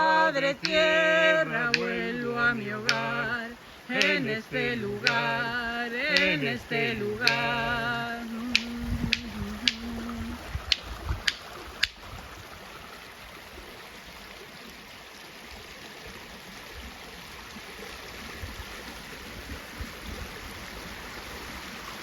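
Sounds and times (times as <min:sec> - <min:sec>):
water running steadily: 0:00.0 - 0:22.0
sharp clicks: 0:01.7 - 0:02.1, 0:02.8 - 0:04.3, 0:05.0 - 0:07.8, 0:08.5 - 0:09.9, 0:10.7 - 0:12.0.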